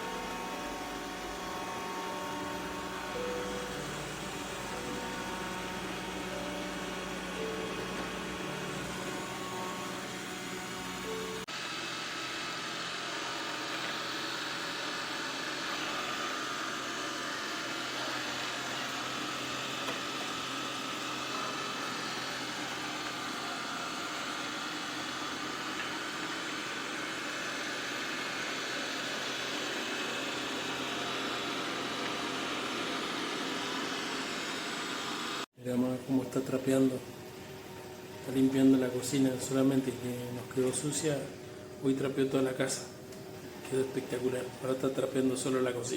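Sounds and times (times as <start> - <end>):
robot vacuum whirring: 0.0 - 35.5.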